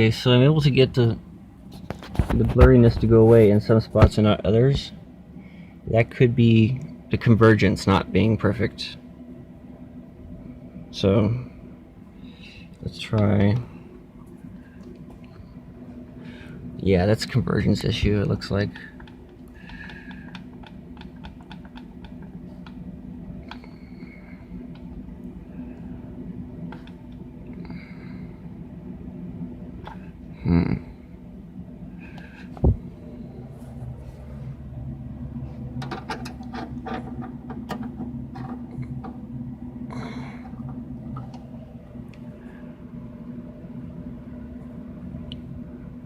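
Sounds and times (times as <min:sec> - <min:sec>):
low steady hum: 0:00.0 - 0:46.0
small clicks and light knocks: 0:19.0 - 0:22.8.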